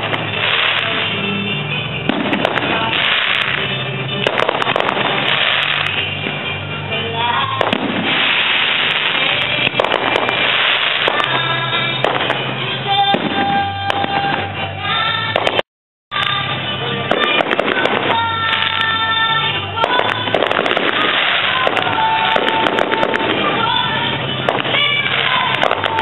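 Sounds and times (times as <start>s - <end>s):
fireworks bangs and crackling: 0.0s - 26.0s
music playing: 0.0s - 26.0s.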